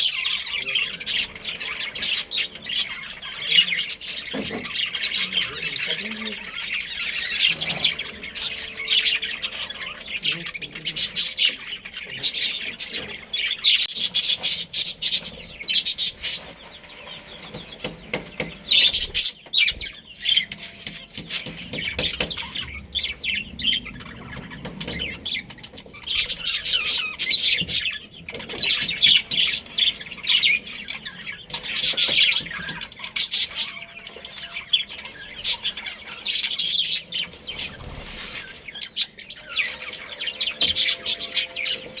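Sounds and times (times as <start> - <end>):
budgerigars chirping and chattering: 0.0 - 42.0.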